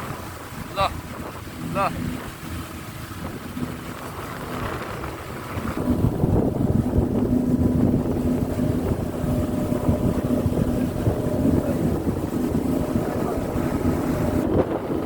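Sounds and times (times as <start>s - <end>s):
boat engine running: 0.0s - 15.0s
wind buffeting microphone: 0.0s - 15.0s.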